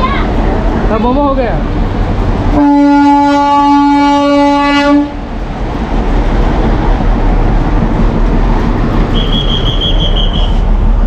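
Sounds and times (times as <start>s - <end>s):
toy train horn blast: 2.6s - 5.2s.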